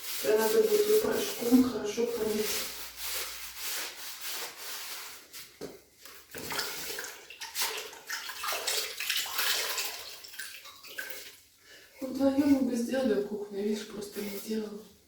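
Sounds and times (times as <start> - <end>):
wet rag scrubbing tiles: 0.0 - 11.4, 13.6 - 15.0
water sloshing: 6.1 - 11.5.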